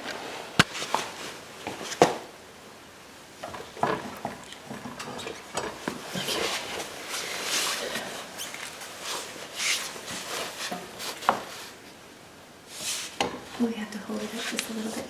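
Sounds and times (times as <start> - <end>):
handling noise: 3.3 - 12.0.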